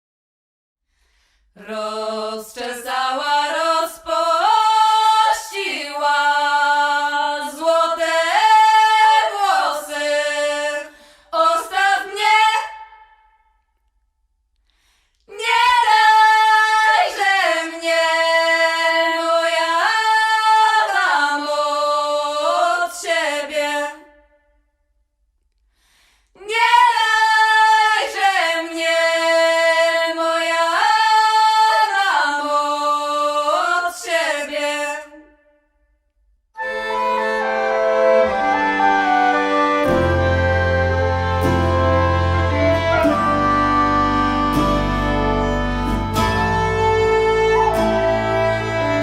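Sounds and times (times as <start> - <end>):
woman singing unaccompanied: 1.6 - 12.7
instrumental music: 36.6 - 49.0.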